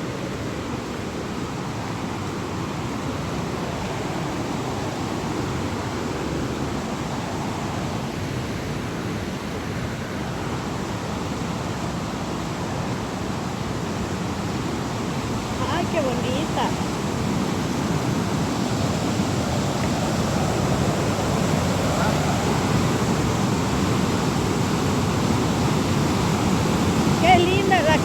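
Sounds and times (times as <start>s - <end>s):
waterfall roar: 0.0s - 28.0s.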